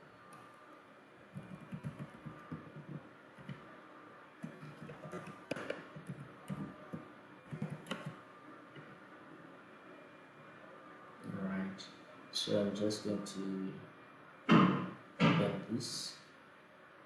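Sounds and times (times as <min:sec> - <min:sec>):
keyboard typing: 0:01.3 - 0:03.6, 0:04.4 - 0:08.2.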